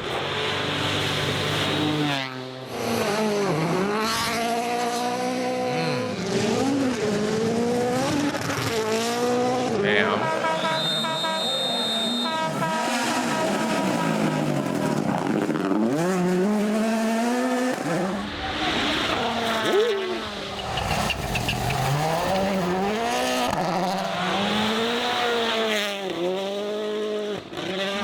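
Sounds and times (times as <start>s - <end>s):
rally car engine revving: 0.0s - 28.0s.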